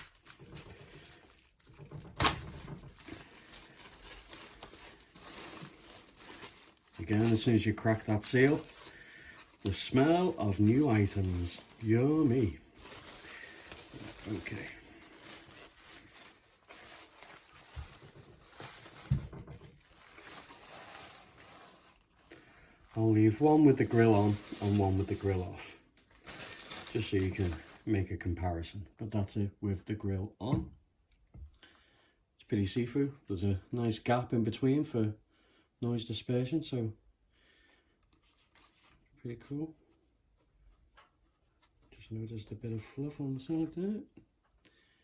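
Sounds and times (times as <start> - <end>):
plastic wrapping crinkling: 0.0 - 28.2.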